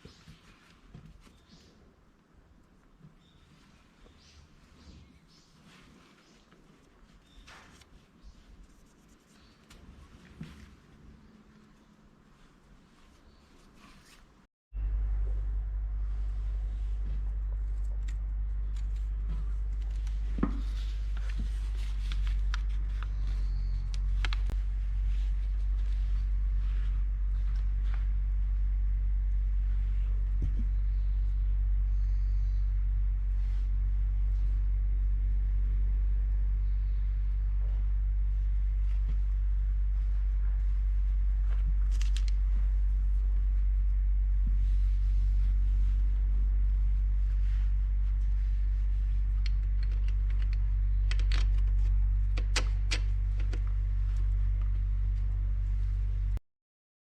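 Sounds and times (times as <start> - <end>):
engine running low rumble: 14.7 - 56.4.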